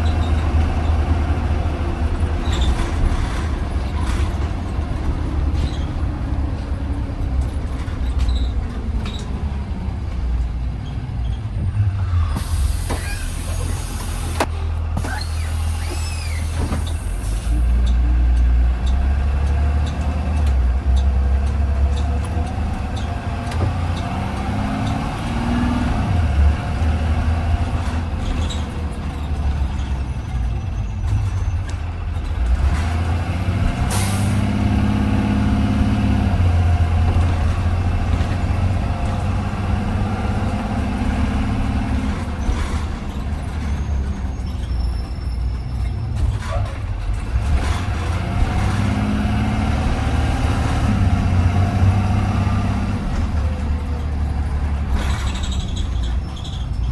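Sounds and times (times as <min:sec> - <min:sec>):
bus engine rumbling: 0:00.0 - 0:56.9
air hiss: 0:12.2 - 0:14.4.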